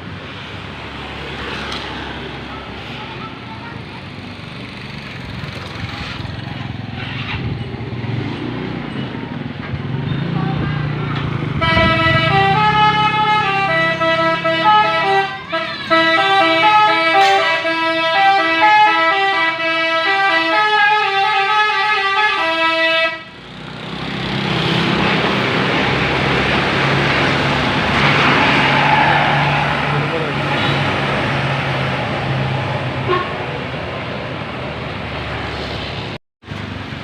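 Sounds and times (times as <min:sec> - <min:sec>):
musical air horn playing a tune: 0:11.6 - 0:23.3.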